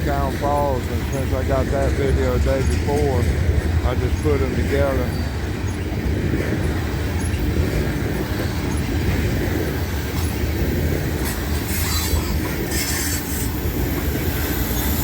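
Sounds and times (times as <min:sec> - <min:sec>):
train wheels rumbling on rail: 0:00.0 - 0:15.0
high-pitched wheel squeal: 0:11.7 - 0:13.6.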